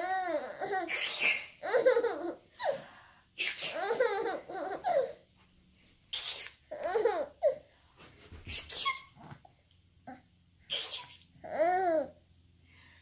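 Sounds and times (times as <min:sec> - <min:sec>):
baby laughing: 0:00.5 - 0:02.7, 0:03.7 - 0:05.2, 0:06.2 - 0:07.6
woman sneezing: 0:00.9 - 0:01.5.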